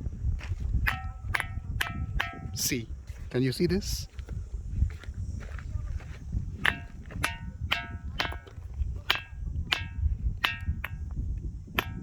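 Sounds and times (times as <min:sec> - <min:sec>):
ringing stone struck with rock: 0:00.8 - 0:02.8, 0:06.6 - 0:12.0.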